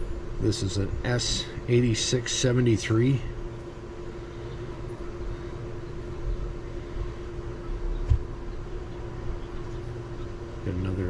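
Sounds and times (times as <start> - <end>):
steady background hum: 0.0 - 11.0.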